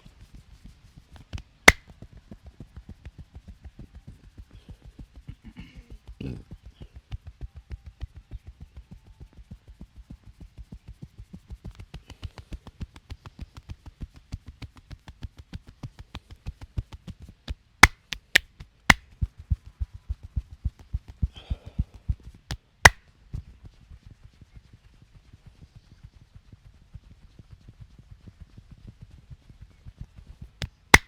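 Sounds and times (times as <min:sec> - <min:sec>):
hands patting on body: 0:01.4 - 0:01.8, 0:17.5 - 0:19.2, 0:30.6 - 0:31.0.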